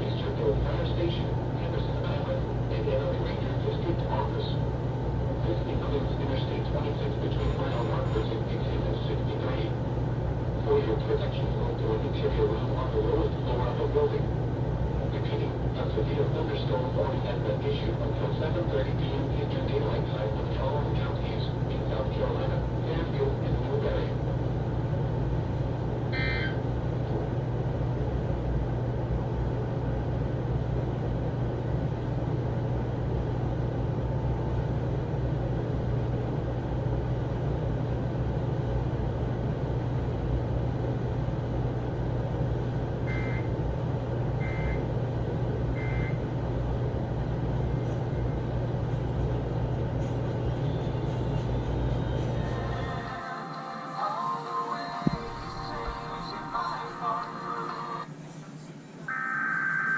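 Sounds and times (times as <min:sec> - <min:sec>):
radio hum and hiss: 0:00.0 - 0:27.6, 0:54.4 - 0:59.9
short digital squawks: 0:26.2 - 0:26.6, 0:59.1 - 0:59.9.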